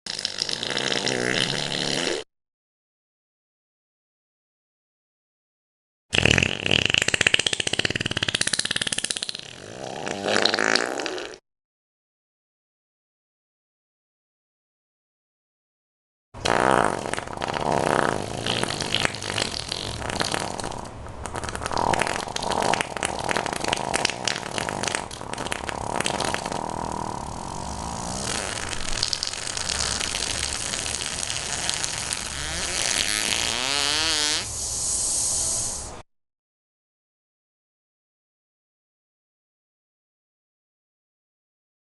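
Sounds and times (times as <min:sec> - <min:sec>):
wet sputtering farts: 0:00.1 - 0:02.3, 0:06.1 - 0:11.4, 0:16.4 - 0:34.5.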